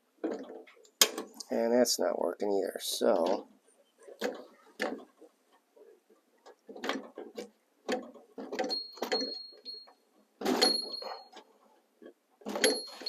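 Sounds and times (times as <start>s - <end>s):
high metallic ring: 10.6s - 11.3s.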